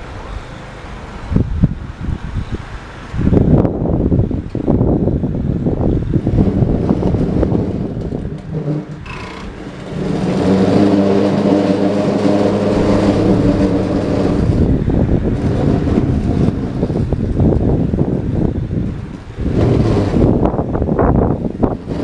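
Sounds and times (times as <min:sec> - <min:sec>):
wind rumbling on microphone: 0:00.0 - 0:22.0
electric motor humming: 0:09.0 - 0:14.7.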